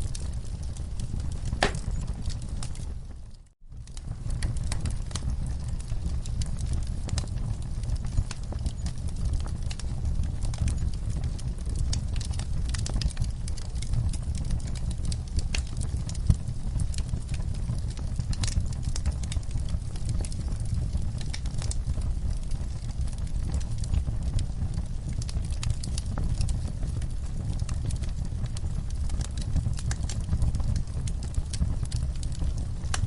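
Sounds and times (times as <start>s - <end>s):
wood fire crackling: 0.0s - 33.0s.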